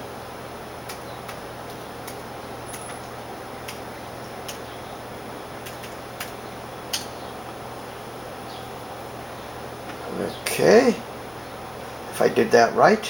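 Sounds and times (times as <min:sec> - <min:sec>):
steady low hum: 0:00.0 - 0:13.0
keyboard keys clicking: 0:00.9 - 0:03.8, 0:04.4 - 0:04.7.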